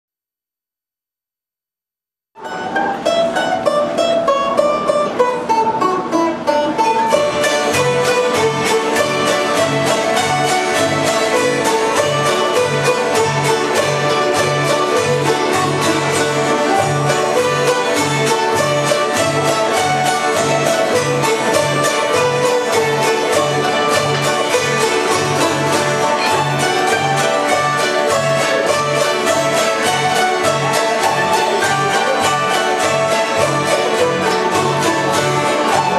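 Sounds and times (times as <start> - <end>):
bluegrass music with banjo and guitar: 2.4 - 35.9.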